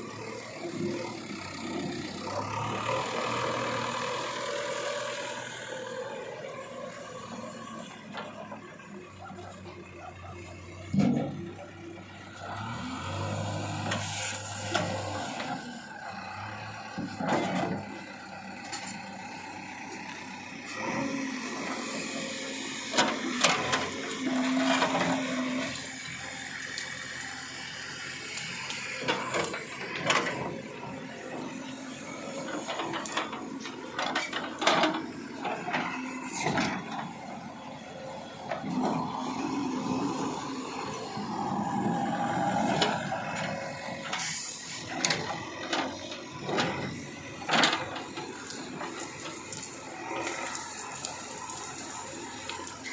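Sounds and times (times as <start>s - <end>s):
diesel engine running: 0.0s - 52.9s
machine knocking and clanking: 44.9s - 49.7s.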